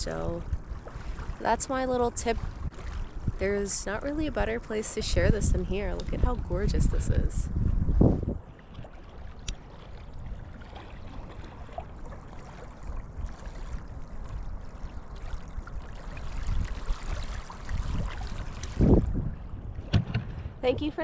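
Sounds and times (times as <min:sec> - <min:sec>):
wind rumble on microphone: 0:00.0 - 0:21.0
flowing water rushing: 0:08.4 - 0:19.2.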